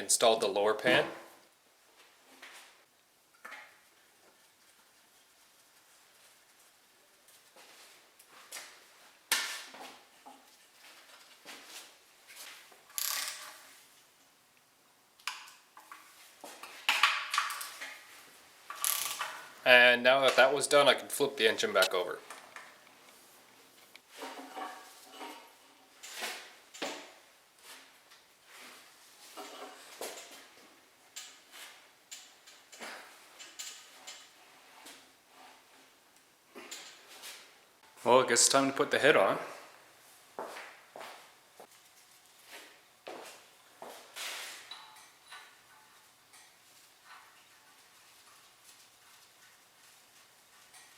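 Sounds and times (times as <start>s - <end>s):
hand tools and metal parts clicking: 12.9s - 13.7s, 18.7s - 19.5s.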